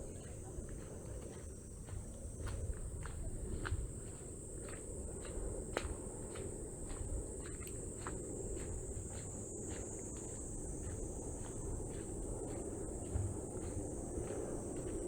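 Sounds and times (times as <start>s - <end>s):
crickets trilling: 0.0s - 15.0s
footsteps: 5.8s - 15.0s.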